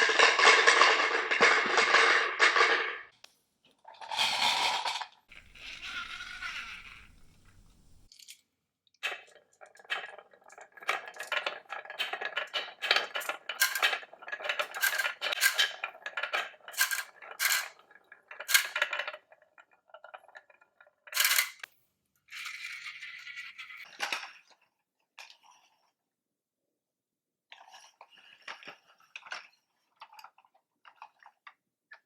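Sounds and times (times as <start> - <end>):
marble rolling rush: 5.3 - 8.1
marbles clacking on track: 5.3 - 8.1.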